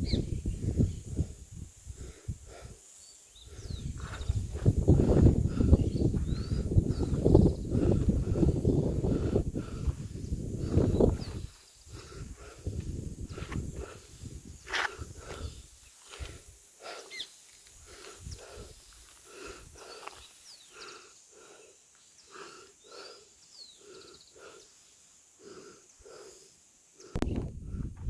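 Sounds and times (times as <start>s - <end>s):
wind on microphone: 0.0s - 2.8s, 3.4s - 16.6s, 17.8s - 20.0s, 27.2s - 28.0s.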